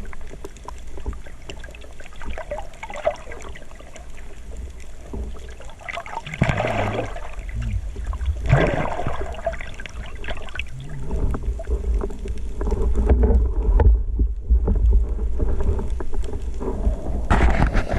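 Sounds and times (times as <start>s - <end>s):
sea water splashing: 0.0s - 17.9s
low rumble: 6.3s - 9.6s, 10.4s - 17.9s.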